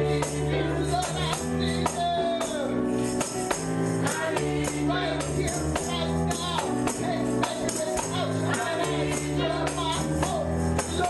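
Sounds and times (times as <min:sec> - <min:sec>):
tambourine and percussion beat: 0:00.0 - 0:11.0
voices singing gospel: 0:00.0 - 0:11.0.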